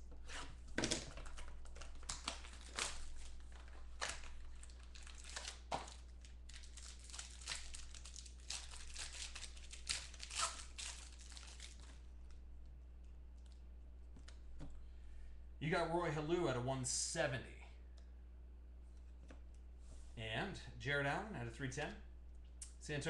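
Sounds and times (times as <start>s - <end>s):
packaging tearing and crinkling: 0.2s - 12.0s.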